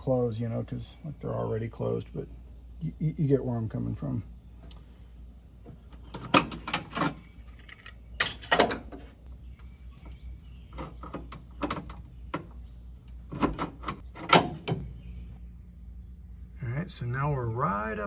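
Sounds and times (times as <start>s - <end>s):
metal clicks and knocks: 5.7s - 9.1s, 10.0s - 15.0s.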